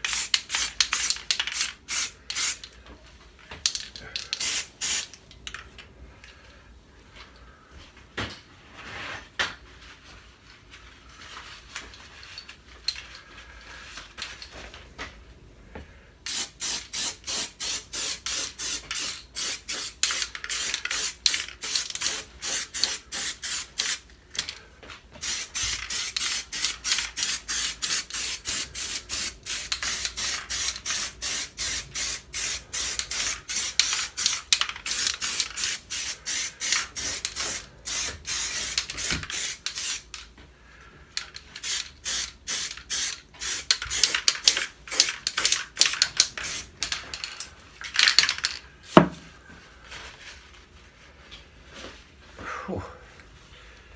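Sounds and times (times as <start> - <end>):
aerosol can spraying: 4.4 - 5.1, 16.3 - 24.0, 25.2 - 40.1, 41.6 - 45.6
faint handling sounds: 46.4 - 52.4.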